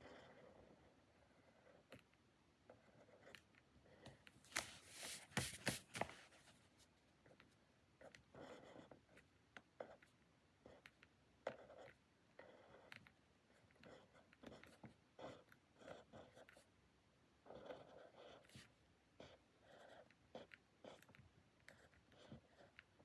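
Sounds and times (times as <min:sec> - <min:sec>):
pen scratching on paper: 0:00.0 - 0:02.0, 0:02.7 - 0:06.2, 0:07.2 - 0:16.7, 0:17.4 - 0:23.0.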